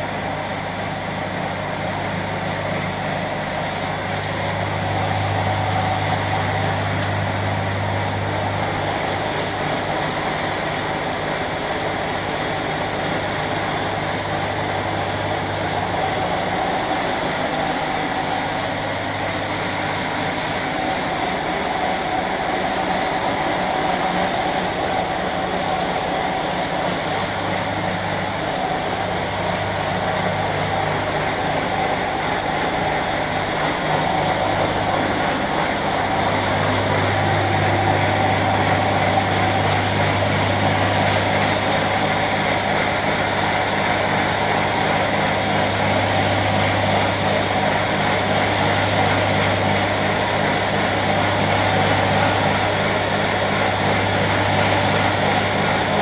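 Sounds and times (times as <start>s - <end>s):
air compressor running: 0.0s - 56.0s
paint spray gun hissing: 3.4s - 6.4s, 16.2s - 29.1s, 40.6s - 56.0s.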